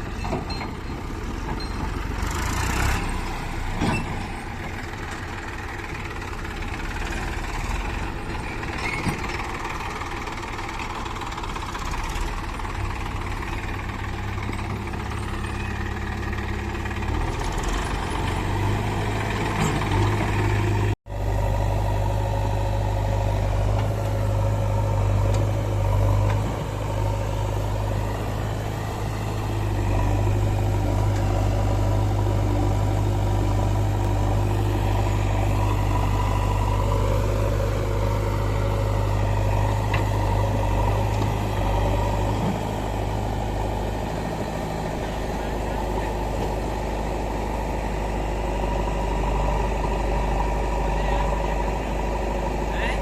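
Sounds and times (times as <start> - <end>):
engine running: 0.0 - 53.0
deep engine hum: 10.9 - 53.0.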